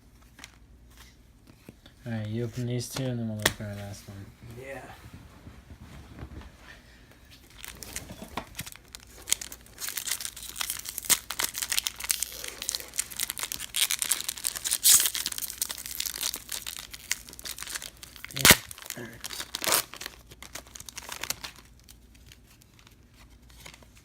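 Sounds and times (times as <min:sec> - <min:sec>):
card pack wrappers crinkling: 0:07.4 - 0:24.0.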